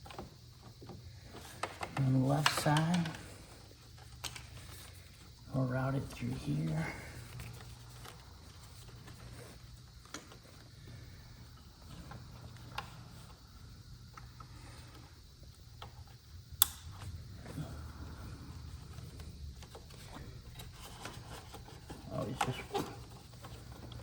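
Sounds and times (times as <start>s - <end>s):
faint low hum: 0.0s - 24.0s
sharp loud click: 16.6s - 16.8s
wiring handling clicks: 16.6s - 17.1s.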